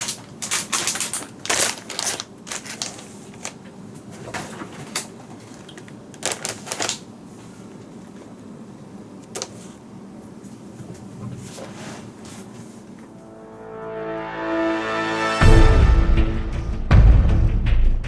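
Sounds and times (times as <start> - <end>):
packaging rustling and clicking: 0.0 - 8.0.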